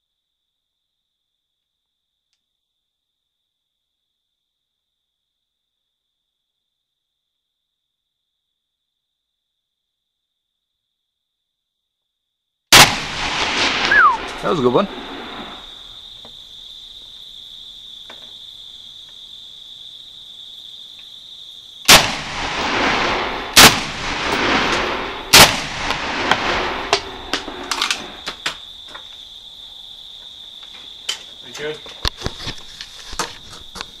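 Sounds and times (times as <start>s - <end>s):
rifle shots with rolling echo: 12.7s - 15.9s, 21.9s - 28.3s.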